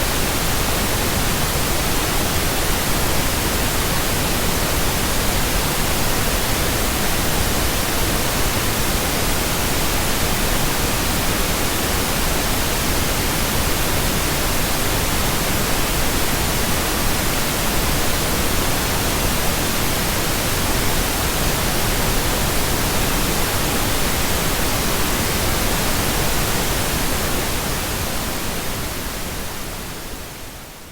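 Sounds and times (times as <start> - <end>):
pink noise hiss: 0.0 - 30.9.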